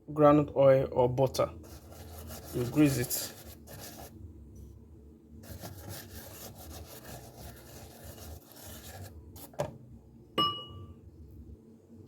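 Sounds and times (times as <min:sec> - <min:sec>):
faint rubbing on waffle plates: 0:01.6 - 0:04.2, 0:05.4 - 0:09.6.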